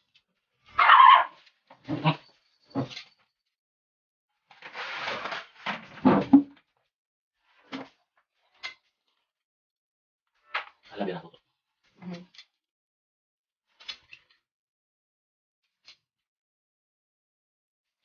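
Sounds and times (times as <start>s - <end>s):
dog barking and whining: 0.7s - 2.3s.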